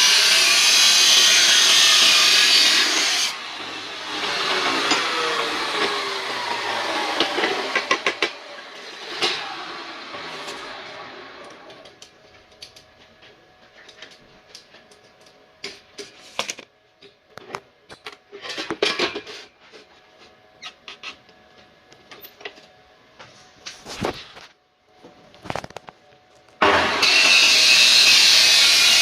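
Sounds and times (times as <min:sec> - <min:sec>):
cut-off saw running: 0:00.0 - 0:12.0, 0:26.6 - 0:29.0.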